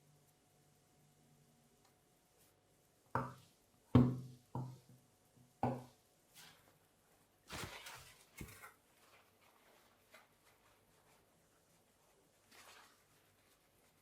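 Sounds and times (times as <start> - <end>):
rustling scrape: 7.5 - 14.0.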